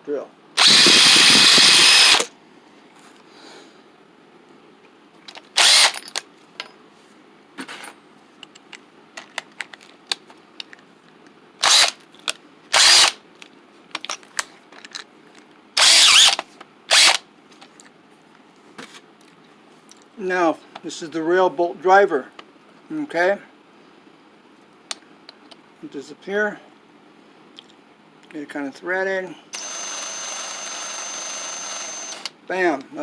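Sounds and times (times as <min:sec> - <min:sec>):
power drill bursts: 0:00.6 - 0:02.3, 0:05.6 - 0:06.0, 0:11.6 - 0:12.0, 0:12.8 - 0:13.2, 0:15.8 - 0:17.2, 0:29.5 - 0:32.4
small clicks and knocks: 0:08.4 - 0:10.9.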